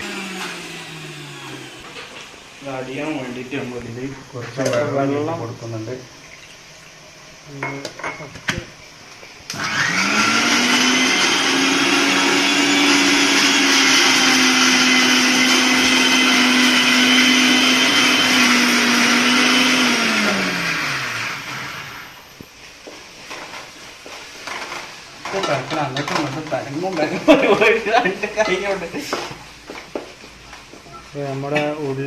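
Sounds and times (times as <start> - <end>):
mixer grinder whining: 0.0 - 3.6, 9.5 - 22.4.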